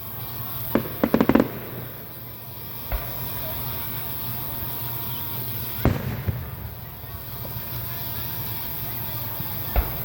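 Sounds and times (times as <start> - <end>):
fireworks bangs: 0.6 - 4.8, 5.6 - 10.0
fireworks sharp pops: 0.7 - 4.7, 5.6 - 8.5, 9.3 - 10.0.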